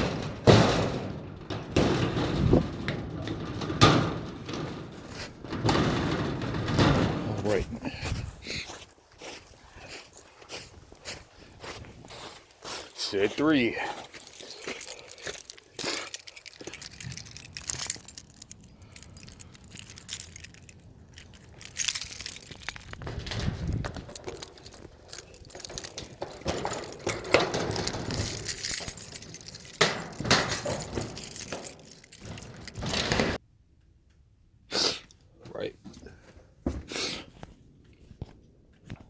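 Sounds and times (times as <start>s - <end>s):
objects clinking and rattling: 13.2s - 33.4s.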